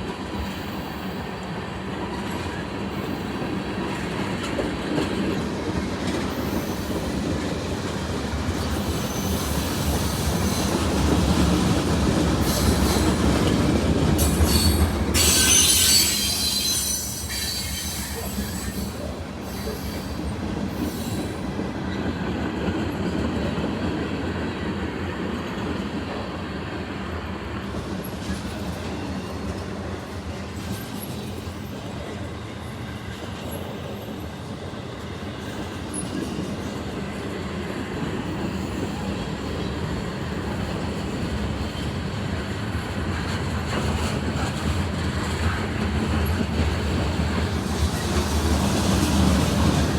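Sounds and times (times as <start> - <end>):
train wheels clattering on rails: 0.0 - 49.9
high-pitched wheel squeal: 14.2 - 20.1.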